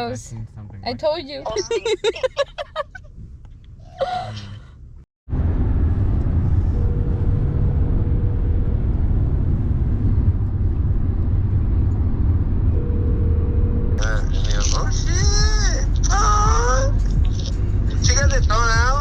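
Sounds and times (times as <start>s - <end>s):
road and engine rumble in car: 0.0s - 19.0s
faint steady hum: 5.9s - 19.0s.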